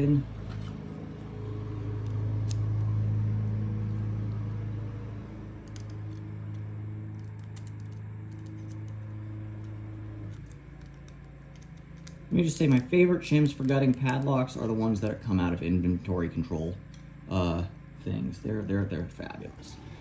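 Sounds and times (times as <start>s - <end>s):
steady low hum: 0.0s - 20.0s
key and padlock clicks: 5.6s - 9.0s, 9.6s - 14.3s.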